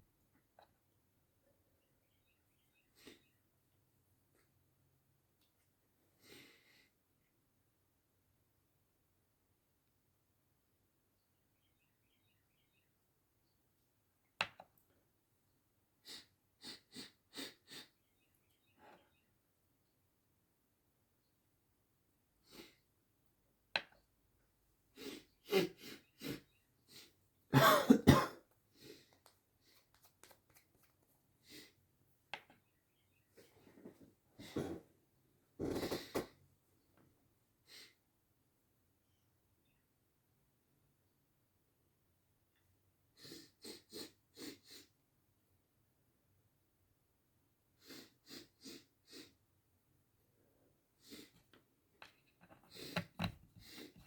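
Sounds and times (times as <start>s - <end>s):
person taking quick sharp breaths: 47.8s - 49.4s, 51.0s - 51.5s, 52.6s - 54.0s
person breathing: 52.6s - 54.0s.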